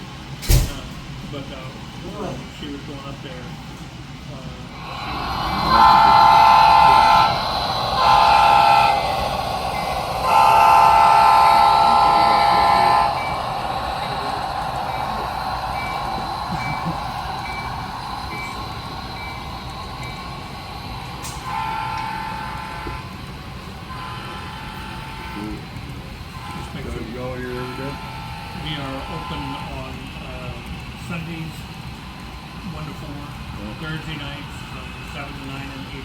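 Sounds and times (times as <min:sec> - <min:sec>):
train running rumble: 0:00.0 - 0:36.0
train horn blasts: 0:05.4 - 0:20.2, 0:21.1 - 0:23.2, 0:23.8 - 0:25.6, 0:26.3 - 0:29.8.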